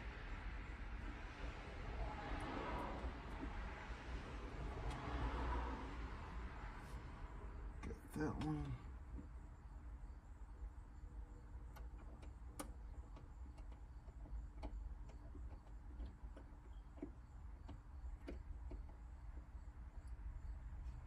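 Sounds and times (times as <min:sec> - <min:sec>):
light clicks and ticks: 0:11.7 - 0:20.2.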